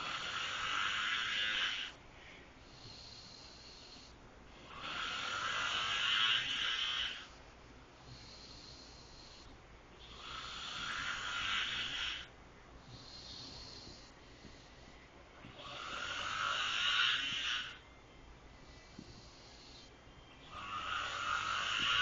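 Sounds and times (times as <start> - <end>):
man snoring loudly: 0.0 - 2.0, 2.8 - 7.3, 10.1 - 12.3, 15.5 - 17.8, 20.5 - 22.0
quiet breathing: 0.0 - 22.0.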